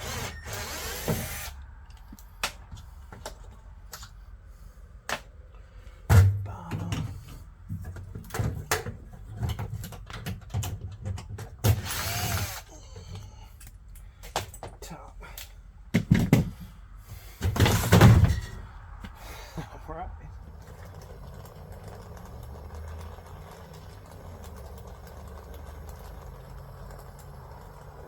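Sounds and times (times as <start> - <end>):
cordless drill running: 0.0 - 1.6, 11.7 - 12.8
tool clicks and clanks: 7.9 - 14.7.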